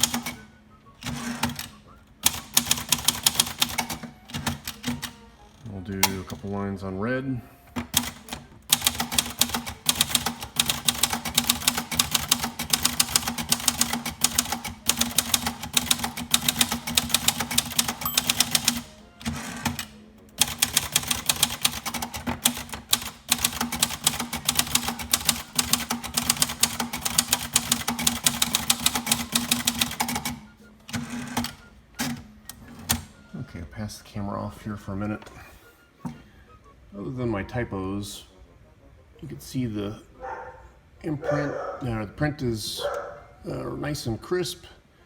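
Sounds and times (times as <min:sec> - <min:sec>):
manual typewriter typing: 0:00.0 - 0:05.2, 0:07.8 - 0:33.1.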